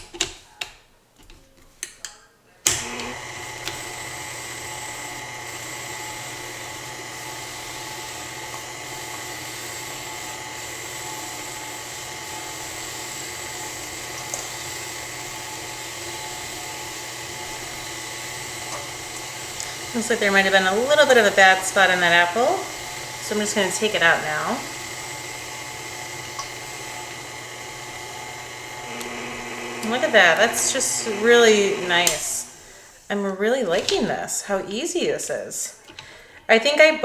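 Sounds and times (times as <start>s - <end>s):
stand mixer motor whining: 2.7s - 33.1s
clicks: 26.3s - 32.6s.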